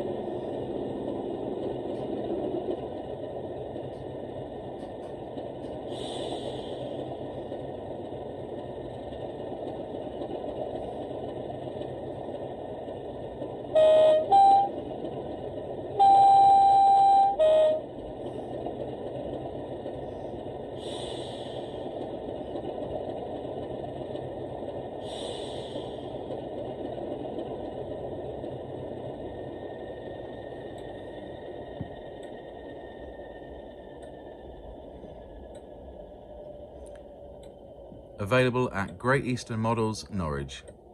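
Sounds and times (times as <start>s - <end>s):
diesel engine sound: 0.0s - 40.9s
two-tone horn: 13.8s - 14.8s, 16.0s - 17.9s.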